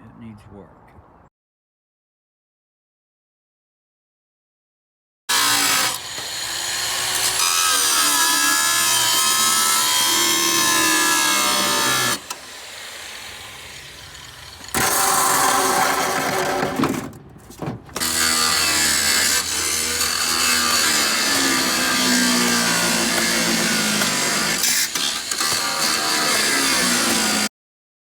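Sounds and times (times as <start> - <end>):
power tool cutting steel: 5.3 - 16.8, 18.0 - 27.5.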